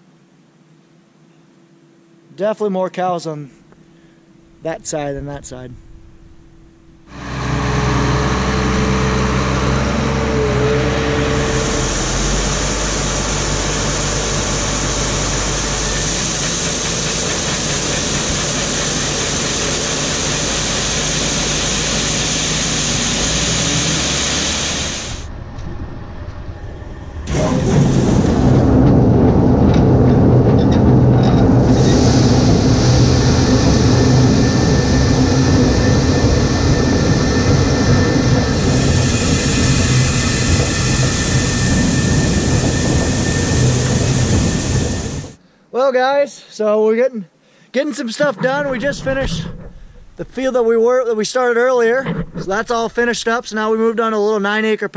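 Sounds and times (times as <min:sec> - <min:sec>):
engine running evenly: 0:07.1 - 0:45.4
rough-running engine: 0:07.1 - 0:45.4.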